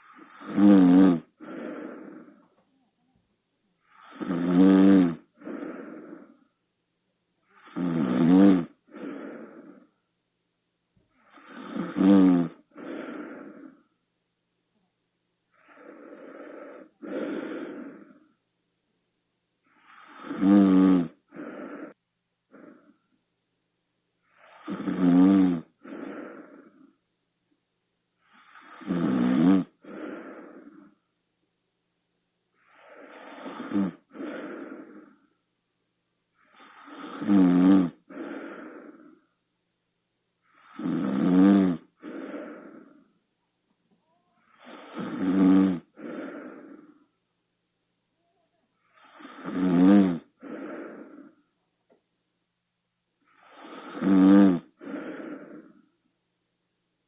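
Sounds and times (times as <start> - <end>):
person snoring: 0.0 - 2.4, 3.9 - 6.4, 7.5 - 9.9, 11.2 - 13.9, 15.5 - 18.4, 19.8 - 23.0, 24.3 - 27.0, 28.3 - 31.0, 32.6 - 35.3, 36.4 - 39.2, 40.4 - 43.1, 44.4 - 47.1, 48.9 - 51.4, 53.2 - 55.9
soft breath: 1.3 - 3.1, 5.3 - 6.6, 8.9 - 10.1, 12.6 - 14.0, 15.6 - 18.4, 21.3 - 23.2, 25.7 - 27.0, 29.8 - 31.2, 34.0 - 35.5, 38.0 - 39.4, 42.0 - 43.2, 45.9 - 47.3, 50.3 - 51.7, 54.7 - 56.1.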